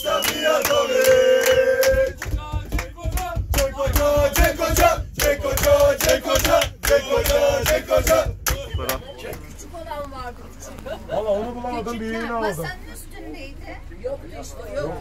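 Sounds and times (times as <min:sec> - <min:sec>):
men chanting and singing: 0:00.0 - 0:09.4
sharp claps: 0:00.1 - 0:09.4.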